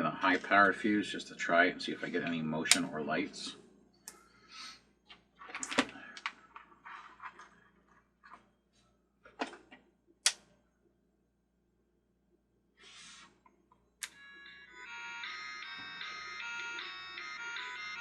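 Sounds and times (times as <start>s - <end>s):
hands handling small parts: 5.1s - 8.5s.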